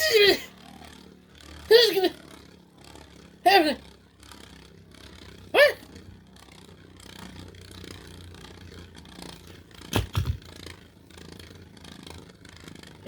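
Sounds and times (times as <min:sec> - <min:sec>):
spinning tops whirring and scraping: 0:00.0 - 0:13.0
sharp knocks: 0:09.9 - 0:10.4.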